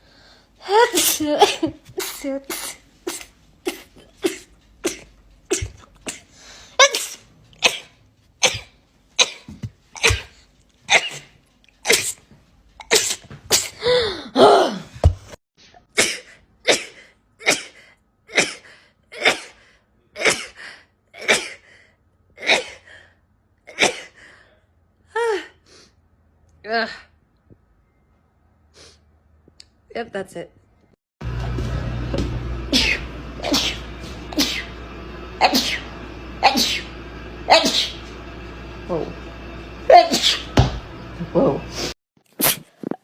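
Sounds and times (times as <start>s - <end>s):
person sneezing: 0.9s - 11.3s, 12.8s - 14.9s, 16.0s - 19.6s, 32.7s - 34.7s, 35.4s - 36.9s, 41.6s - 43.0s.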